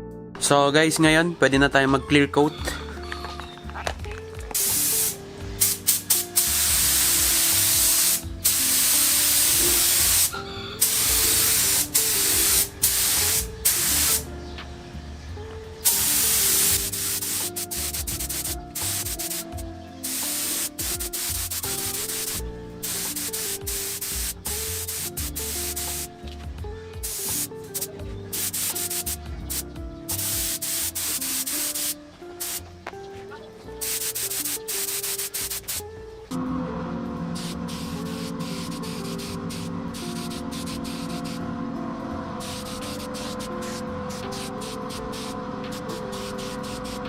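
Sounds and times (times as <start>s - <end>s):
spray gun hissing: 4.5s - 14.3s, 15.8s - 26.2s, 27.0s - 32.7s, 33.8s - 35.9s, 37.4s - 41.5s, 42.4s - 47.0s.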